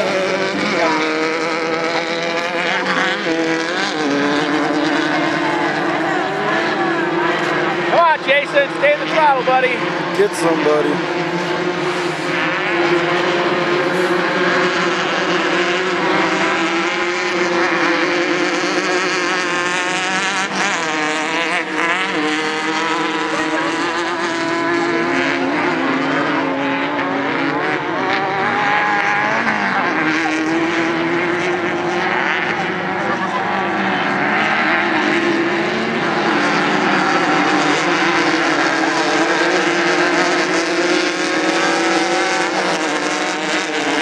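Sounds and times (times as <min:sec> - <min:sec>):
race vehicle engines revving: 0:00.0 - 0:44.0.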